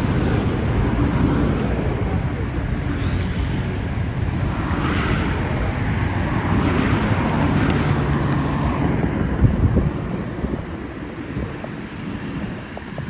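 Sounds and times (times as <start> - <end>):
vehicle engine rumbling: 0.0 - 13.0
wind buffeting microphone: 0.0 - 13.0.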